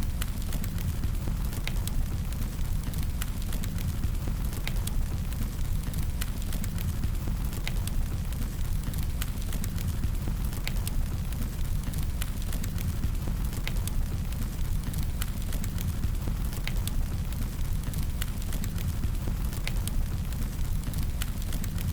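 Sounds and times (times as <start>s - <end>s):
fire crackling and popping: 0.0s - 21.9s
fire rumbling: 0.0s - 21.9s.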